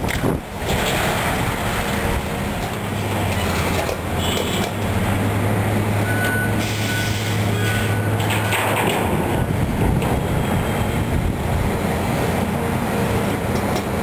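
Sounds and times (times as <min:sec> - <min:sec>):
heavy machinery diesel engine: 0:00.0 - 0:14.0
short beep: 0:06.0 - 0:08.1.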